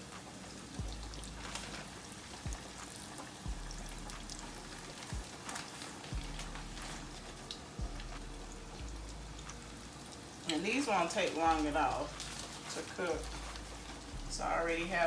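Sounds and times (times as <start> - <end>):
meat frying in hot oil: 0.0 - 15.0
low bass thumps: 0.8 - 1.5, 3.5 - 5.3, 6.1 - 9.8.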